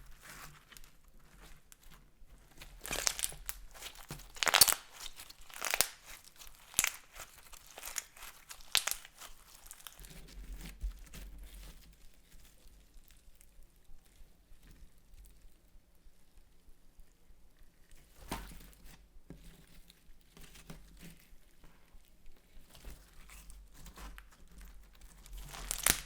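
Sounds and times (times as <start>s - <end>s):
crunching and crackling: 0.0s - 13.5s, 22.4s - 26.0s
slime handling sounds: 2.6s - 10.2s, 25.1s - 26.0s.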